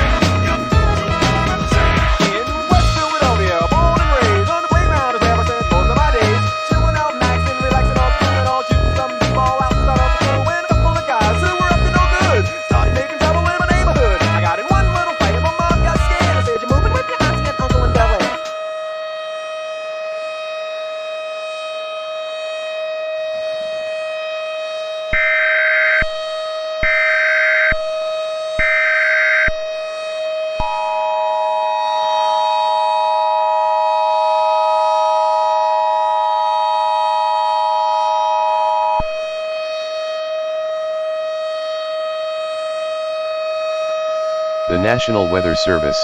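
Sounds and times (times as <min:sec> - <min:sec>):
screeching digital header bursts: 0:00.0 - 0:18.5
steady droning tone: 0:00.0 - 0:18.5
two-tone attention signal: 0:00.0 - 0:18.5.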